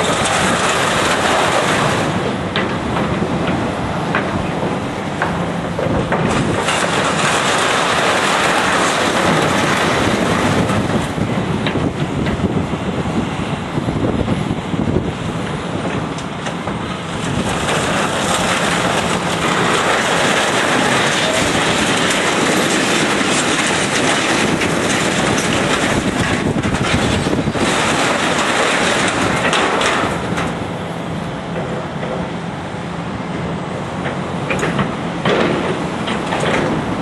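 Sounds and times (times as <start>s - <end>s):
metal grinding and scraping: 16.4s - 30.6s.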